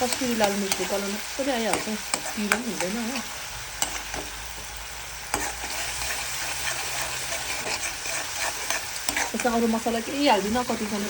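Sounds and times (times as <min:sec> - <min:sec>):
vegetables sizzling in oil: 0:00.0 - 0:11.0
spoon clicking against pan: 0:01.7 - 0:03.0.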